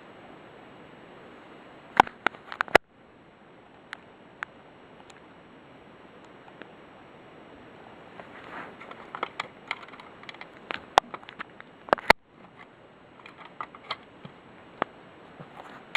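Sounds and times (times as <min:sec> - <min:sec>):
steady hiss: 0:00.0 - 0:15.9
sharp clicks and knocks: 0:08.2 - 0:15.9.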